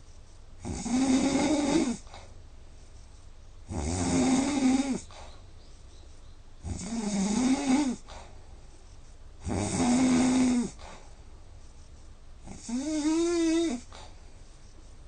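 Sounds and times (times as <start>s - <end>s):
man snoring loudly: 0.6s - 2.0s, 3.7s - 5.0s, 6.7s - 8.0s, 9.4s - 10.8s, 12.5s - 13.9s
quiet breathing: 1.6s - 3.7s, 4.4s - 6.6s, 7.5s - 15.0s.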